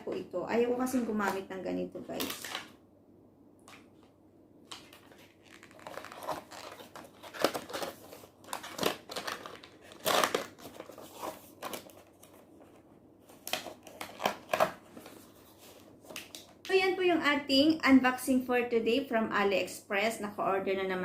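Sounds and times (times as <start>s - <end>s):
plastic packaging crinkling: 2.0s - 2.8s, 3.7s - 16.6s.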